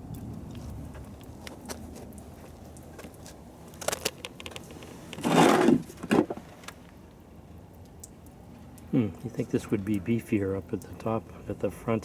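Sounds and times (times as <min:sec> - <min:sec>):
scraping rustle: 0:01.6 - 0:06.8.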